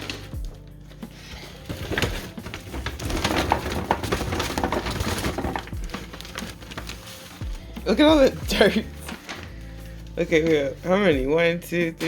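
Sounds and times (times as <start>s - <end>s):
background music: 0.0s - 12.0s
potatoes and soil rustling and knocking: 1.6s - 9.5s.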